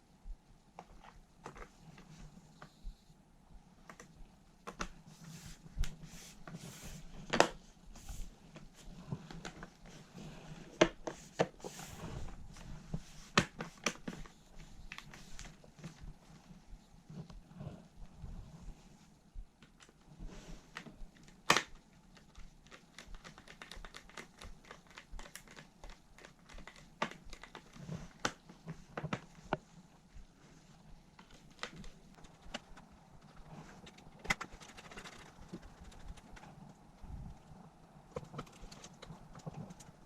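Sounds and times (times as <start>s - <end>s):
faint low hum: 0.0s - 40.0s
hands clicking laptop parts: 20.7s - 29.6s, 31.2s - 36.6s.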